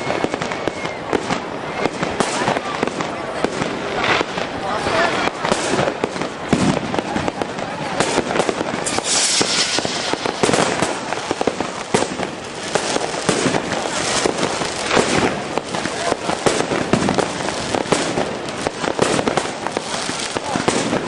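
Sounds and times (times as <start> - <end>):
fireworks bangs and crackles: 0.0 - 21.0.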